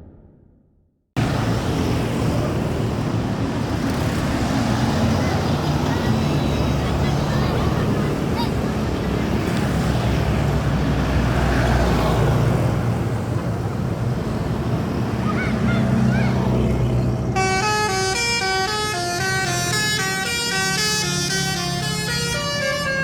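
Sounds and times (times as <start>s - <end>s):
bus engine rumbling: 1.2s - 23.0s
multi-tone bus horn tune: 17.3s - 23.0s.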